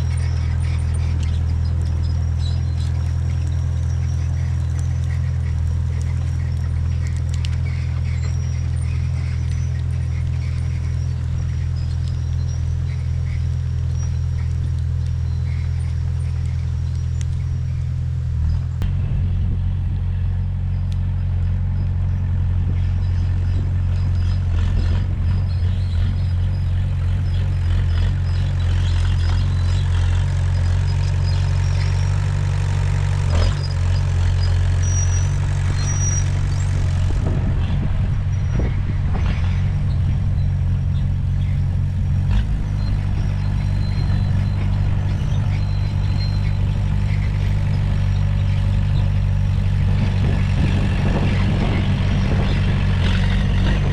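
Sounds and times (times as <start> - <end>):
bulldozer diesel engine running: 0.0 - 53.9.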